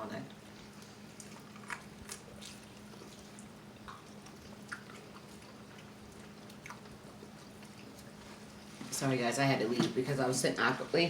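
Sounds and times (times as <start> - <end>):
steady low hum: 0.0 - 11.0
mouth clicks and smacks eating: 0.3 - 8.5.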